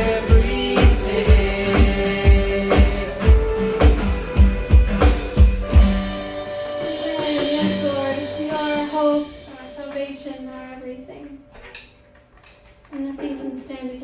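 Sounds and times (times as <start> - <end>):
drum kit beat: 0.0 - 10.4
sustained guitar chords: 0.0 - 11.2.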